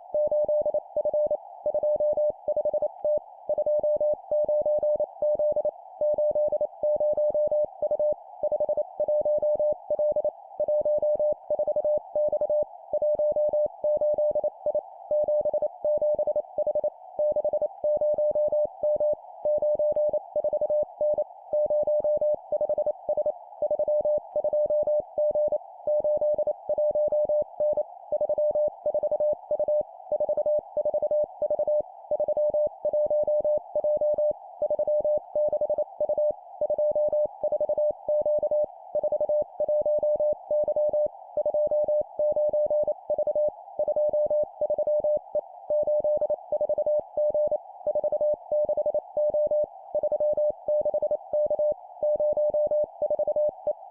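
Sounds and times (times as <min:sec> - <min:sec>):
morse code beeps: 0:15.1 - 0:53.6.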